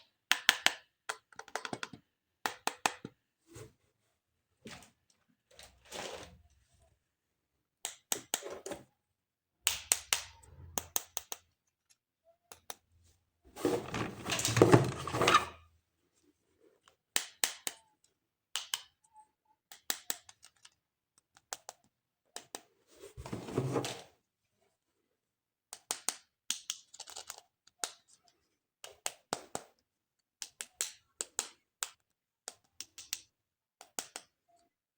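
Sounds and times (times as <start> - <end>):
handling plastic toys and packaging: 4.7 - 6.8, 13.5 - 15.7.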